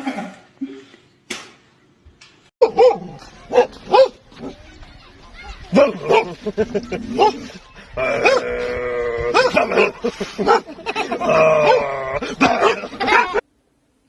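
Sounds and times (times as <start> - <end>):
dog howling: 11.6 - 12.8.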